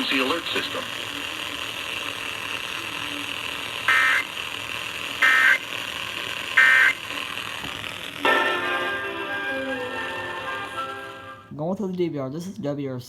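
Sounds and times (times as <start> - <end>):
buzzy digital data bursts: 0.0 - 8.3
steady hiss: 0.0 - 9.0.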